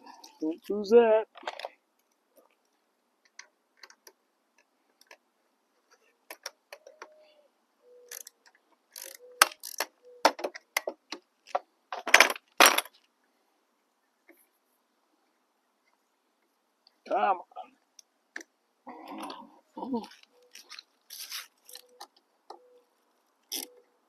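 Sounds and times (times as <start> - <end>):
wrenches clicking on metal: 8.1 - 9.9.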